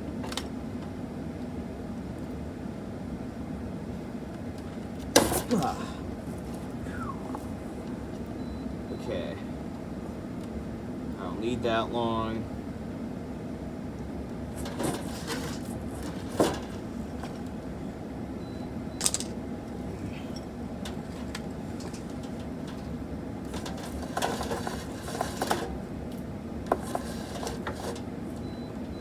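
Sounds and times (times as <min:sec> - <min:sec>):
steady low hum: 0:01.0 - 0:29.0
cable clicks and rustles: 0:20.4 - 0:28.1.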